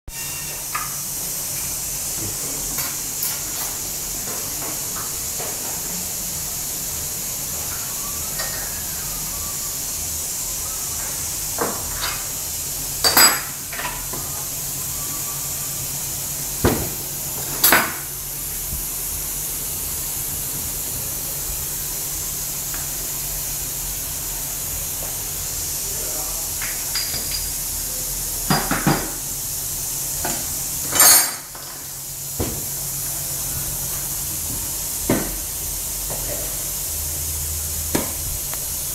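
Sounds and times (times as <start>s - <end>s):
steady hiss: 0.1s - 38.9s
metal parts clinking: 30.9s - 31.5s.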